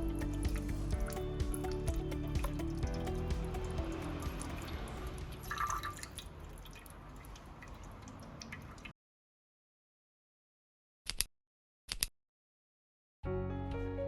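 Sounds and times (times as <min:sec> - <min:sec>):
fluid dripping into a drain pan: 0:00.0 - 0:08.9.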